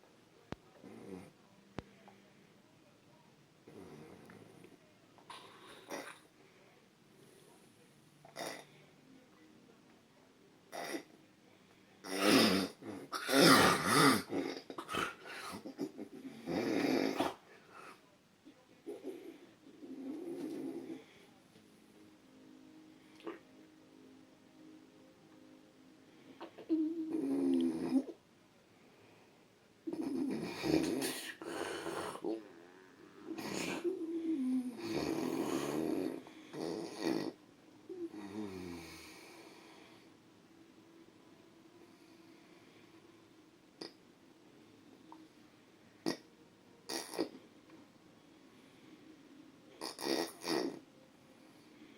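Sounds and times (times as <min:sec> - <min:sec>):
quiet snorts: 0:03.6 - 0:06.3, 0:08.3 - 0:08.9, 0:10.7 - 0:11.2, 0:12.0 - 0:18.0, 0:29.8 - 0:40.1, 0:46.0 - 0:47.5, 0:49.7 - 0:50.8.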